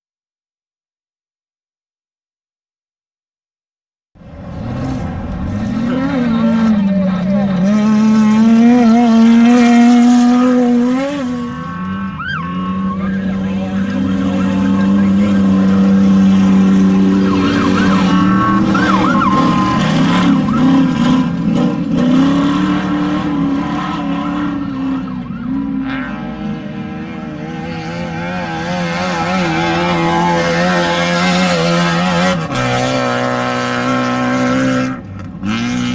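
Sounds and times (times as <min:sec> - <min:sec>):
race vehicle engines running hard: 0:04.2 - 0:35.9.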